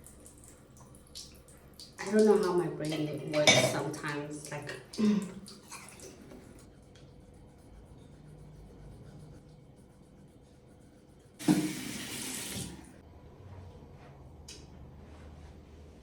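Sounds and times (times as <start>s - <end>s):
tap water running into sink: 0.0s - 6.5s, 11.4s - 13.0s.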